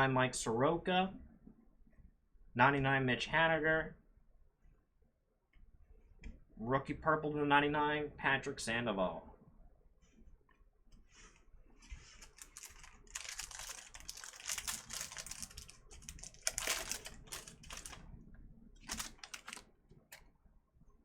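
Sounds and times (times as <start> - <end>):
wrapper rustling and crinkling: 11.1 - 18.2, 18.8 - 20.1.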